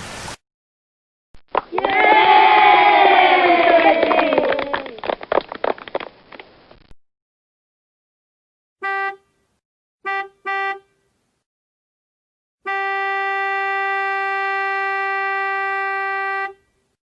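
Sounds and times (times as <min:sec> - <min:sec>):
car horn honking: 0:08.8 - 0:11.1, 0:12.6 - 0:16.8.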